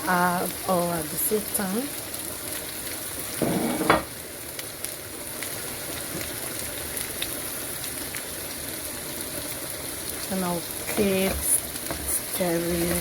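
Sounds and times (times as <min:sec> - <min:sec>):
sauce sizzling and popping: 0:00.0 - 0:13.0.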